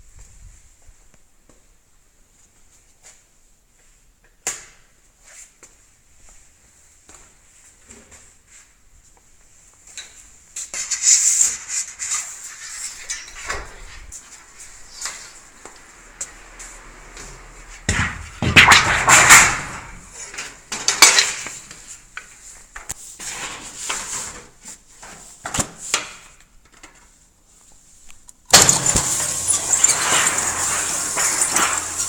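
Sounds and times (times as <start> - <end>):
sheet metal clanking and scraping: 10.8 - 14.2, 17.8 - 21.5, 28.6 - 32.0
harsh continuous metallic noise: 28.5 - 32.0.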